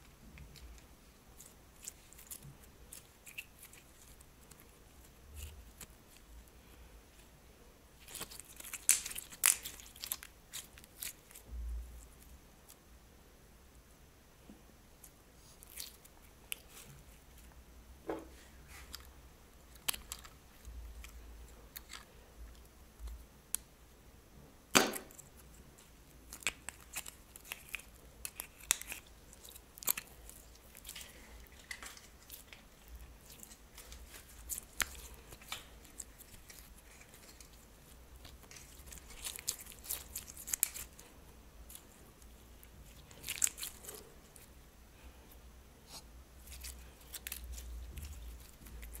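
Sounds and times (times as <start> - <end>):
slime and plastic bags clicking: 8.0 - 11.4, 19.7 - 22.1, 26.3 - 41.0.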